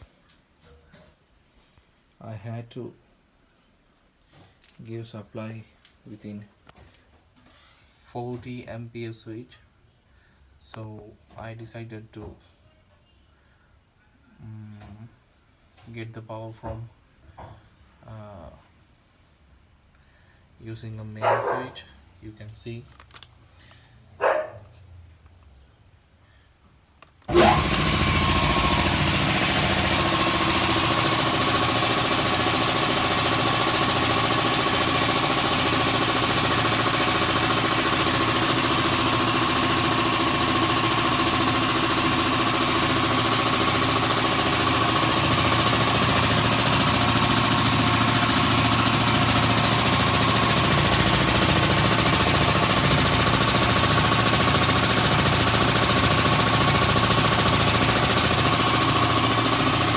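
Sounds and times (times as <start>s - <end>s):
air compressor running: 27.2s - 59.9s.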